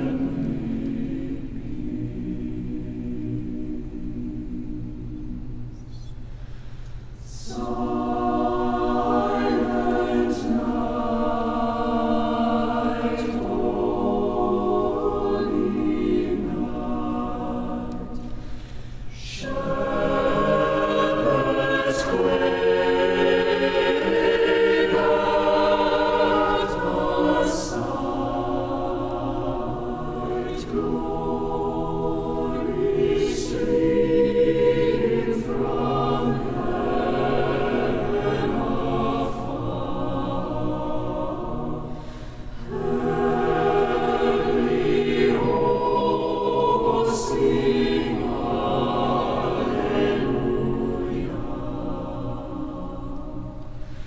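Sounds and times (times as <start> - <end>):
choir singing sustained chords: 0.0 - 54.0.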